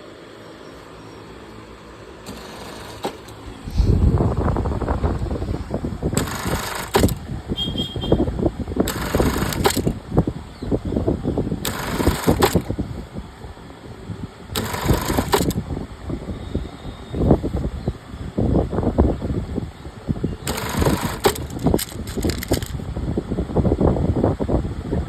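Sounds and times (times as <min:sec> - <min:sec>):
industrial sewing machine running: 0:02.2 - 0:03.4, 0:06.1 - 0:07.3, 0:08.8 - 0:10.0, 0:11.6 - 0:12.8, 0:14.5 - 0:15.6, 0:20.4 - 0:22.8.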